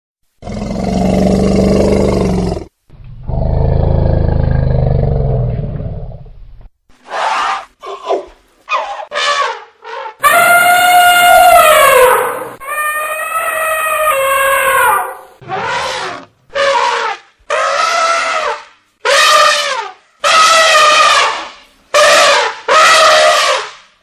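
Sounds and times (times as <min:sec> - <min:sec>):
elephant trumpeting: 0:07.0 - 0:23.8.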